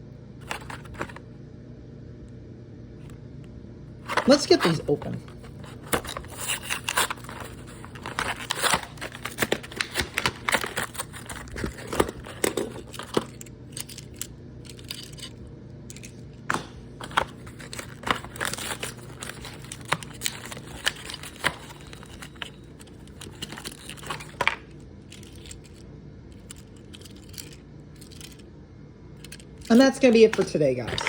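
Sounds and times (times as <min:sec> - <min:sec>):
packaging tearing and crinkling: 0:00.4 - 0:01.2, 0:04.1 - 0:15.3, 0:16.5 - 0:24.6.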